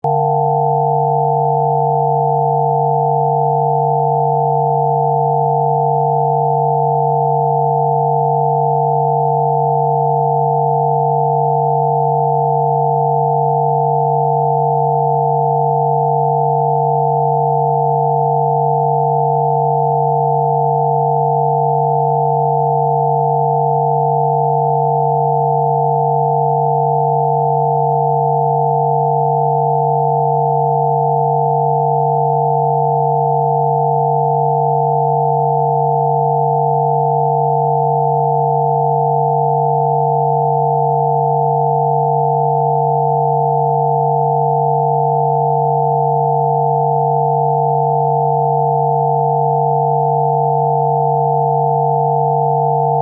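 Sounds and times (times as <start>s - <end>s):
cluster of higher sine tones: 0.0s - 53.0s
low electronic sine tone: 0.0s - 53.0s.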